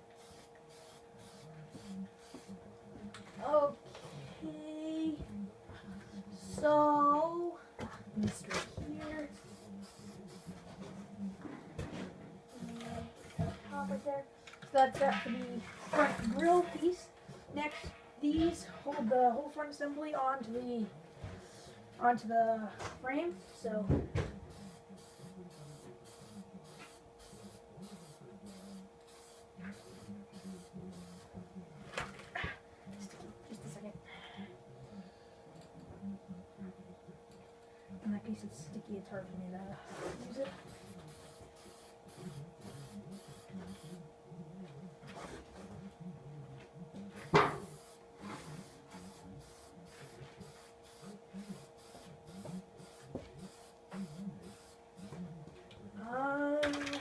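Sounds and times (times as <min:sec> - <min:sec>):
spray paint can hissing: 0:00.2 - 0:02.5, 0:09.5 - 0:10.5, 0:24.6 - 0:31.2, 0:40.7 - 0:44.0, 0:47.6 - 0:48.0, 0:48.6 - 0:55.1.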